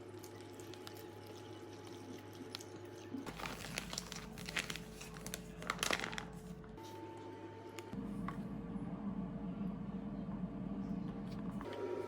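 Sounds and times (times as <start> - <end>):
plastic packaging crinkling: 3.3 - 6.8.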